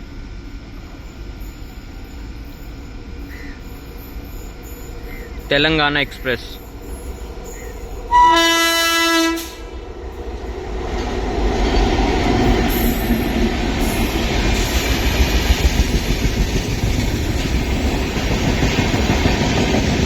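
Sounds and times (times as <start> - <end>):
train rumble and wheel clatter: 0.0 - 20.0
locomotive horn blast: 8.1 - 9.7.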